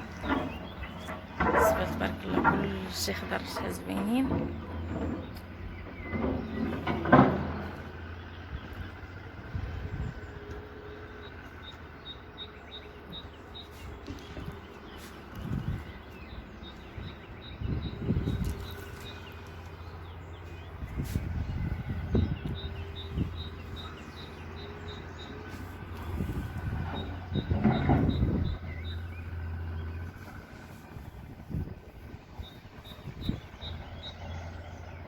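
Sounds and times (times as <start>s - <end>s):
small bird chirping: 9.7s - 35.0s
low rumble: 14.1s - 35.0s.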